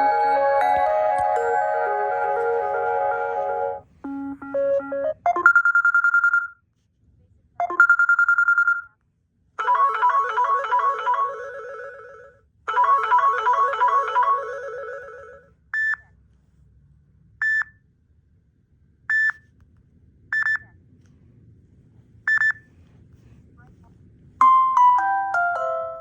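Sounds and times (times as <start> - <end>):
melodic ringtone: 0.0 - 5.9, 9.6 - 12.0, 12.7 - 15.0, 24.4 - 26.0.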